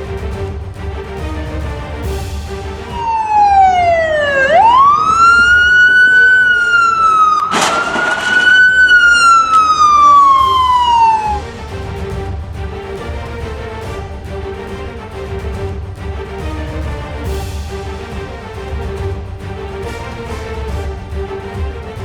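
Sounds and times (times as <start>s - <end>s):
police siren wailing: 3.0s - 11.4s.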